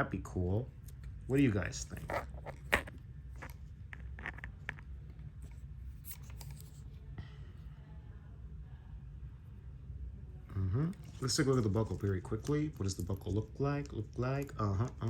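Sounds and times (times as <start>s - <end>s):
low steady hum: 0.0s - 15.0s
watch clicks and rubs: 0.8s - 6.8s, 11.1s - 15.0s.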